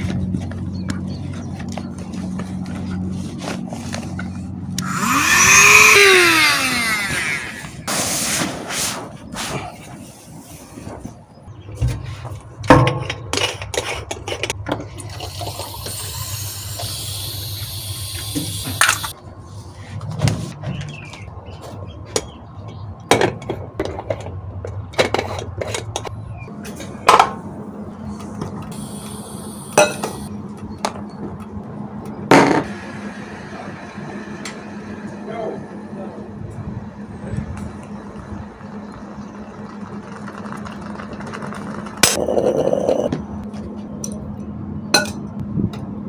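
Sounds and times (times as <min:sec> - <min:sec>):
hiss: 0:15.4 - 0:19.1
pots and cups clinking: 0:29.8 - 0:30.2.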